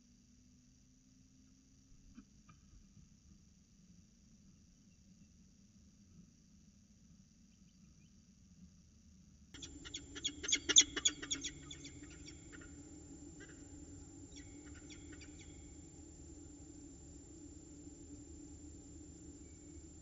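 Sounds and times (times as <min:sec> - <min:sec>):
falcon alarm calls: 0:09.6 - 0:16.9.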